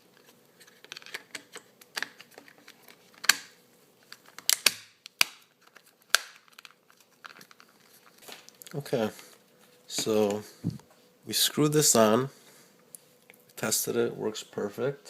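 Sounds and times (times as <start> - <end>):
plastic parts clicking and knocking: 0.6 - 3.5.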